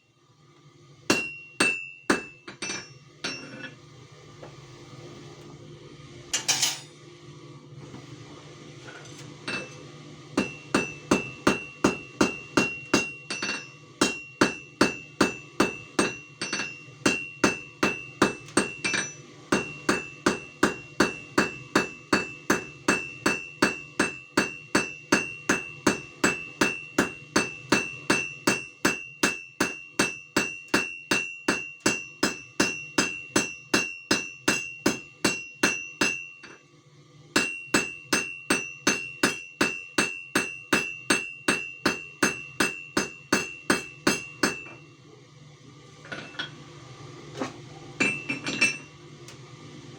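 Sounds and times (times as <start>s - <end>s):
anvil ringing: 1.1s - 3.7s, 10.4s - 36.6s, 37.4s - 44.8s
hammer striking anvil: 1.1s - 3.8s, 6.4s - 6.9s, 9.5s - 9.8s, 10.4s - 36.6s, 37.4s - 44.8s, 48.0s - 48.9s.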